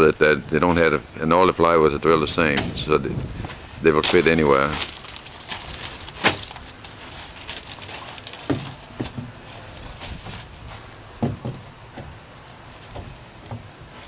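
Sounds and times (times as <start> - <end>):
wooden knocks and scrapes: 4.5 - 12.2.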